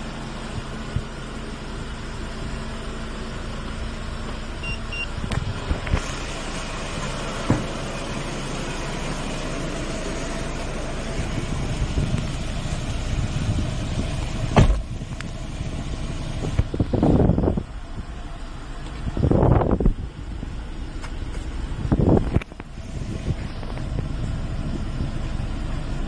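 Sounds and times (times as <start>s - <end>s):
truck engine idling: 0.0s - 26.0s
short electronic beeps: 4.6s - 5.2s.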